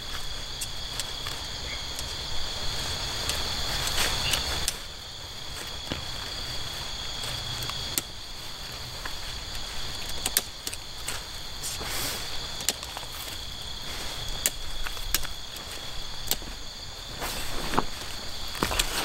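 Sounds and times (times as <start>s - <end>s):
crickets chirring: 0.0s - 19.0s
rustling swishes: 15.6s - 19.0s.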